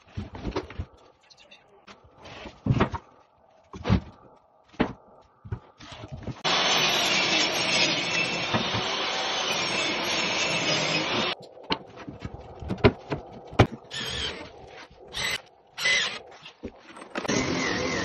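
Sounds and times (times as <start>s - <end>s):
power tool running: 6.4s - 11.4s, 17.3s - 18.0s.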